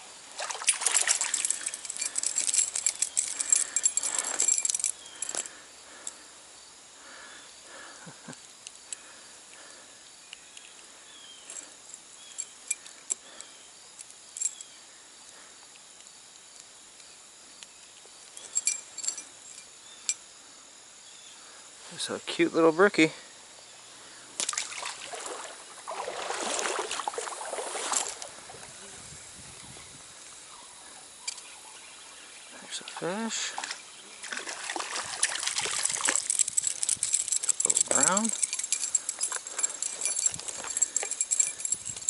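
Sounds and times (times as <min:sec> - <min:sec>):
high insect drone: 0:00.0 - 0:42.0
handling rustling and clicking: 0:00.5 - 0:05.5, 0:34.7 - 0:42.0
faint chirps: 0:01.2 - 0:16.2, 0:28.0 - 0:34.8
scattered clicks: 0:35.6 - 0:42.0.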